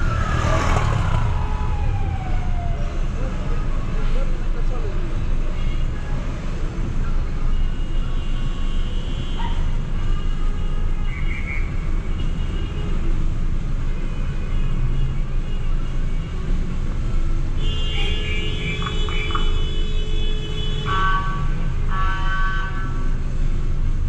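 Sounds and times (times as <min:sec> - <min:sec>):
idling traffic rumble: 0:00.0 - 0:11.0
car horns honking: 0:17.6 - 0:23.0.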